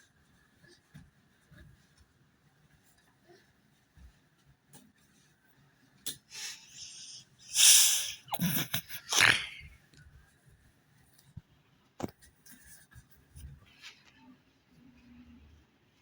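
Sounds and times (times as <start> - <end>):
breathy voice bursts: 6.3 - 9.7.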